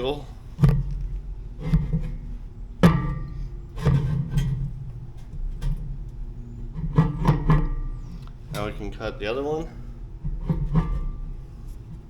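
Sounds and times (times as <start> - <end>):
metal panel clanking: 0.0 - 12.0.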